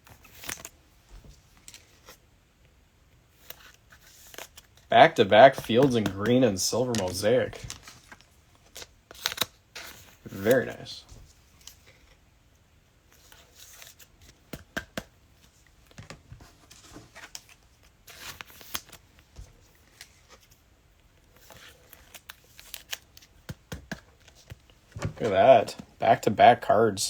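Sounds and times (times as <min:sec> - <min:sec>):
cards sliding against cards: 0:05.5 - 0:10.9.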